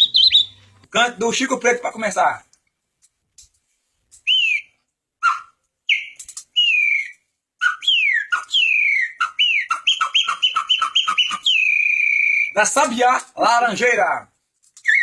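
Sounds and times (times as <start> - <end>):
person whistling birdsong: 0.0 - 0.6, 4.3 - 4.7, 5.3 - 12.6.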